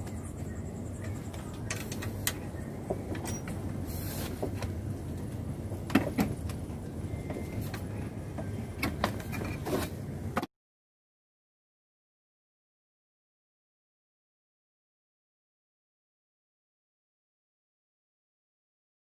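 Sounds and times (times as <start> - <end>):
steady low rumble: 0.0 - 9.0.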